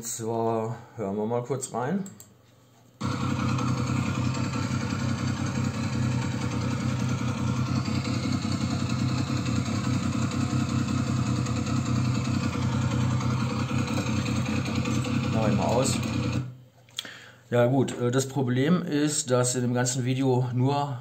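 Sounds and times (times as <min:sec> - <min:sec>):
engine rattle: 0:03.0 - 0:16.5
motorcycle engine idling: 0:03.0 - 0:16.5.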